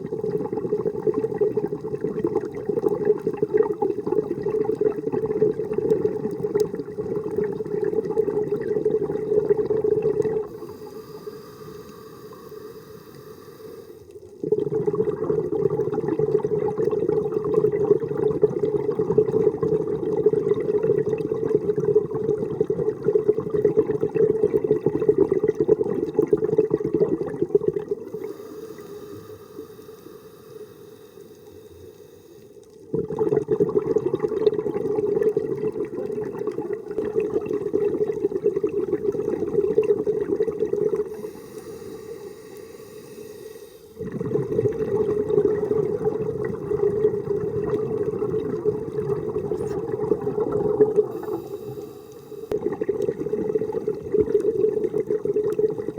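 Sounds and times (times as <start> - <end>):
bubbles gurgling underwater: 0.0 - 12.5, 14.2 - 28.4, 32.7 - 42.2, 43.9 - 55.9
regulator hiss: 10.5 - 14.0, 51.1 - 52.6.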